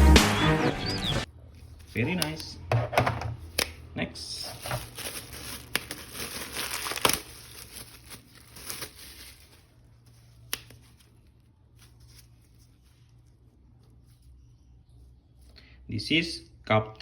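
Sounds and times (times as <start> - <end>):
plastic packaging crinkling: 4.3 - 13.8.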